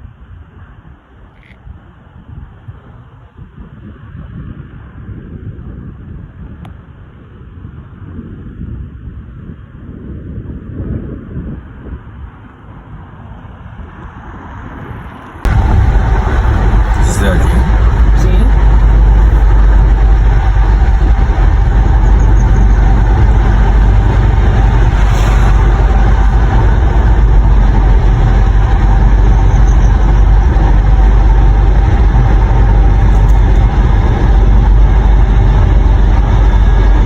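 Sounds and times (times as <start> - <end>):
jet engines rumbling: 11.6 - 37.0
faint jet whine: 12.5 - 37.0.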